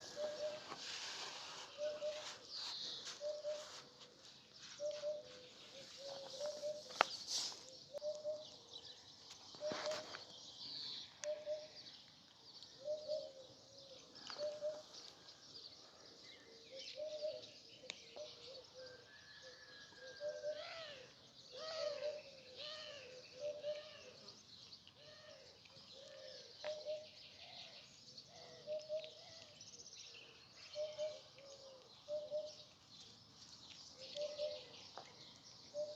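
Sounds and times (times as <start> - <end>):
birds chirping and whistling: 0.0 - 3.8, 4.8 - 8.6, 25.9 - 32.7, 33.9 - 35.9.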